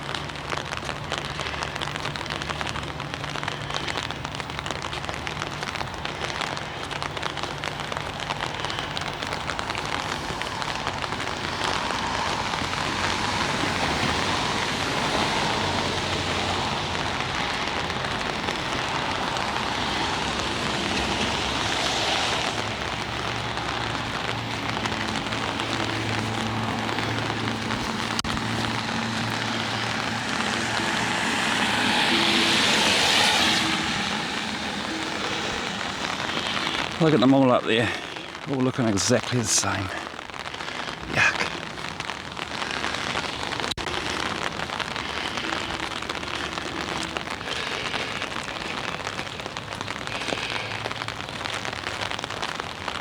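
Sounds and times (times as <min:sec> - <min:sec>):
rain pattering on an umbrella: 0:00.0 - 0:53.0.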